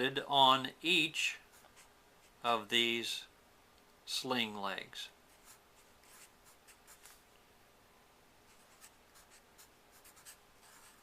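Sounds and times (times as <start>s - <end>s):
pen scratching writing strokes: 5.3s - 7.2s, 8.5s - 11.0s.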